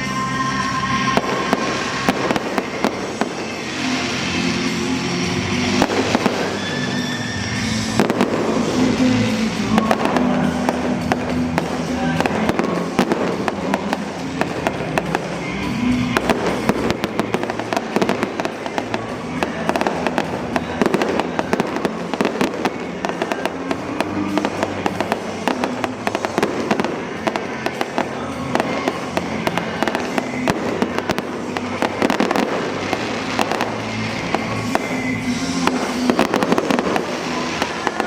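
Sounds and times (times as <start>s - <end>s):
fireworks bangs and crackles: 0.0s - 38.0s
music playing: 0.0s - 38.0s.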